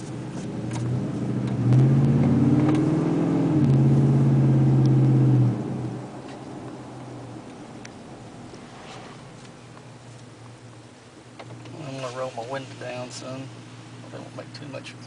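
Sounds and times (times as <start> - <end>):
truck engine exhaust drone: 0.0 - 15.0.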